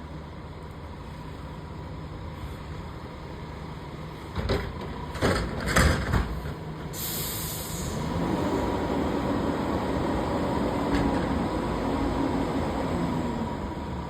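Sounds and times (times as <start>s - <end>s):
short hiss: 7.0s - 8.0s.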